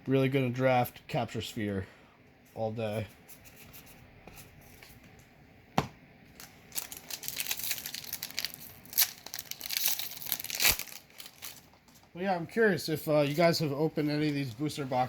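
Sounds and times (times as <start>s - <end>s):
foil wrapper tearing and crinkling: 6.4s - 12.1s.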